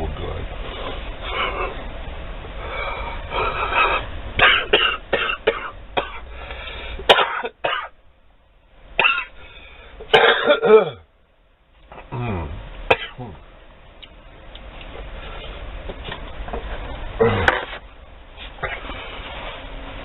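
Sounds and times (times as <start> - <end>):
man coughing: 3.7 - 6.2, 7.1 - 7.9, 9.0 - 9.4, 10.1 - 11.1, 12.1 - 13.4, 17.2 - 17.8
man groaning: 12.0 - 13.4, 17.2 - 17.7.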